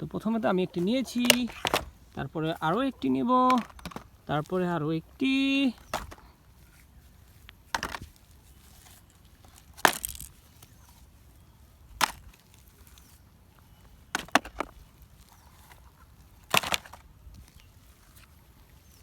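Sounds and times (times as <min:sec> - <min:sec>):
toy vehicles clattering into basket: 0:03.4 - 0:04.1, 0:09.5 - 0:10.4, 0:16.5 - 0:17.0.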